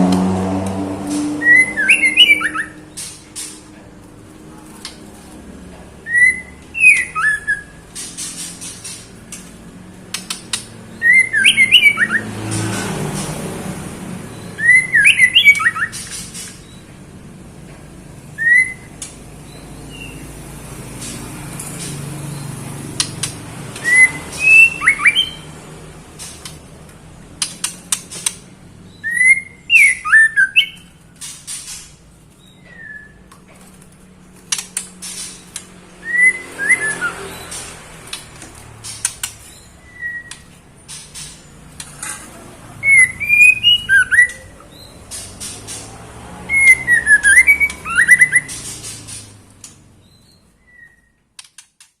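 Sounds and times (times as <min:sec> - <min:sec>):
bird whistled notes: 0:01.4 - 0:02.8, 0:11.0 - 0:12.2, 0:14.5 - 0:16.1, 0:23.8 - 0:25.5, 0:28.9 - 0:30.8, 0:36.0 - 0:37.5, 0:39.8 - 0:40.5, 0:42.8 - 0:44.5, 0:46.5 - 0:48.6, 0:50.6 - 0:51.2.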